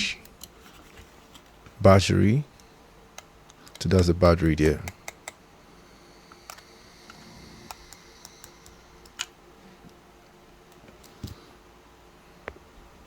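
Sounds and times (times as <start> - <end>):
small plastic parts clicking: 6.3 - 10.0.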